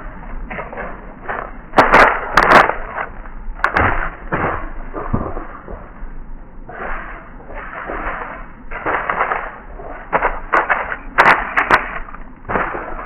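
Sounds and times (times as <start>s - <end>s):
rustling in dry leaves: 7.6s - 13.0s
twigs snapping: 8.7s - 13.0s.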